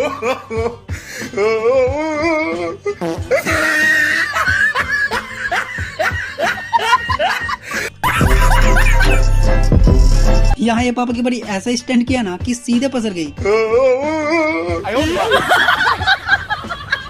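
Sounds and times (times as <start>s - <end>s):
music: 0.0s - 17.0s
laughter: 3.3s - 9.3s, 15.0s - 17.0s.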